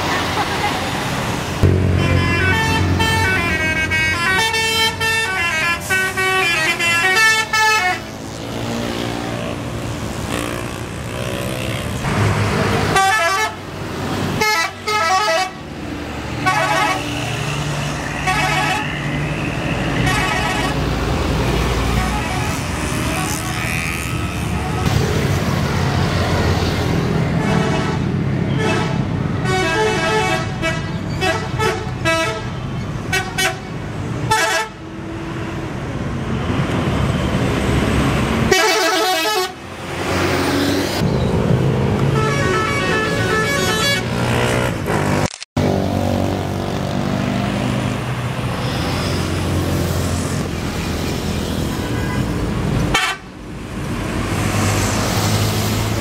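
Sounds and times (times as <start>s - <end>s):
bus engines running: 0.0s - 56.0s
traffic: 0.0s - 56.0s
multi-tone air horns: 1.6s - 8.0s, 18.1s - 19.1s, 19.8s - 20.8s, 34.3s - 34.8s, 38.5s - 39.6s, 42.1s - 44.5s, 52.9s - 53.2s.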